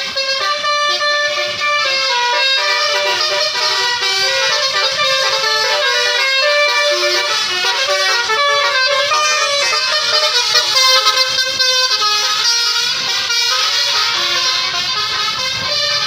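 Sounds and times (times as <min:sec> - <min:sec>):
musical air horns playing a tune: 0:00.0 - 0:16.0.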